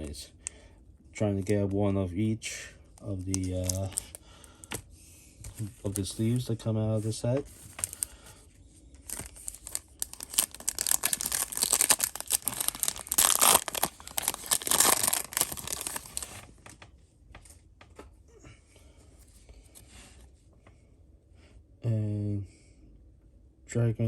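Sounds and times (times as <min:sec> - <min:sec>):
cards clicking and rustling: 0:03.1 - 0:04.8, 0:07.4 - 0:08.1, 0:09.1 - 0:16.5
foil wrapper tearing and crinkling: 0:03.2 - 0:04.2, 0:07.6 - 0:08.2, 0:09.1 - 0:16.5.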